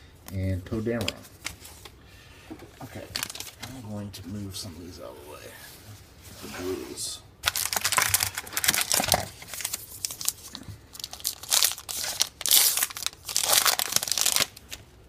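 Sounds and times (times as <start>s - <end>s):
wrapper crinkling and tearing: 3.0s - 3.6s, 7.4s - 14.9s.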